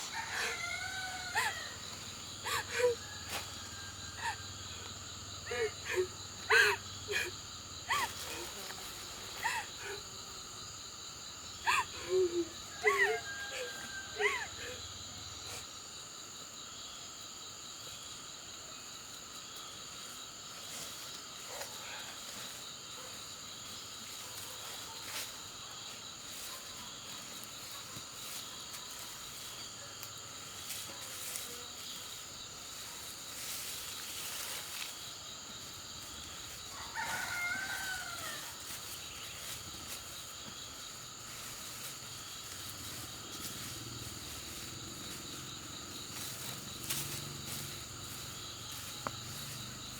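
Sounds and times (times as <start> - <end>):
rooster crowing: 0.0 - 2.0, 2.6 - 4.9, 12.7 - 14.6, 36.7 - 38.6
insects shrilling: 0.0 - 15.7, 20.6 - 49.9.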